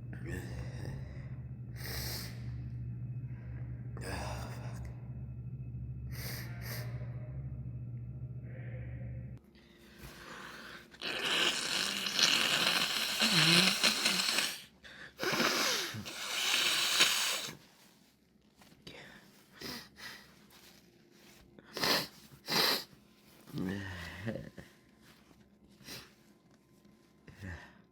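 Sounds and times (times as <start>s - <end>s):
person breathing loudly: 0.0s - 5.1s, 8.5s - 17.6s
person sniffing: 10.1s - 17.6s, 21.7s - 23.0s.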